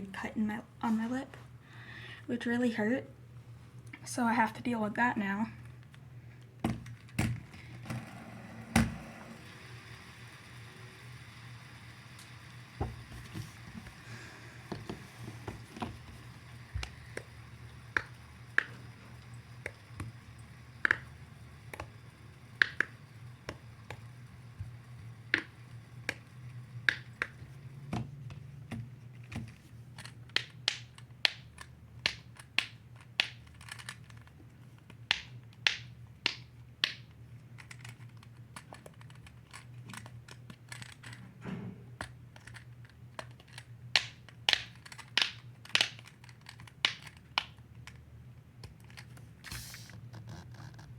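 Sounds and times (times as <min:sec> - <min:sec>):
fidget toy clicking: 0:16.8 - 0:18.8, 0:20.8 - 0:27.5, 0:30.0 - 0:41.2, 0:42.0 - 0:48.0.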